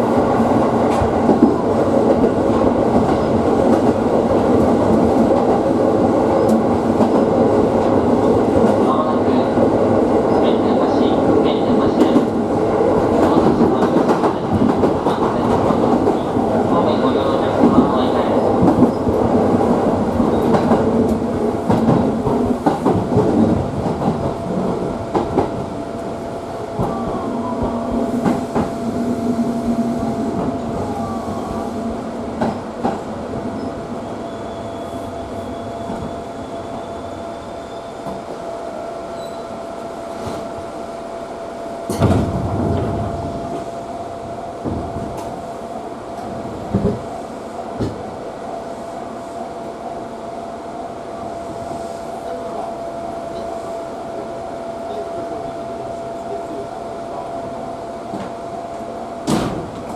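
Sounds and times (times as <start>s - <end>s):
train wheels rumbling on rails: 0.0s - 49.0s, 51.1s - 59.9s.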